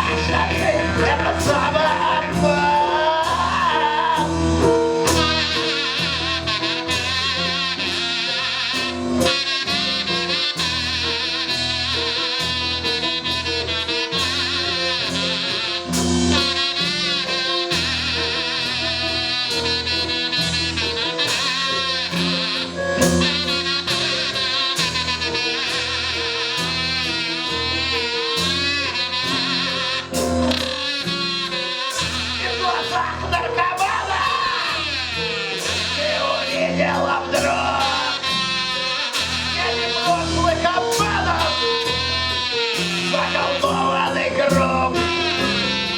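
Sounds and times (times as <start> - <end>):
shouted rock vocals: 0.0 - 6.2, 32.4 - 45.9
bass guitar: 0.0 - 45.9
drums: 0.0 - 45.9
live blues band playing: 0.0 - 45.9.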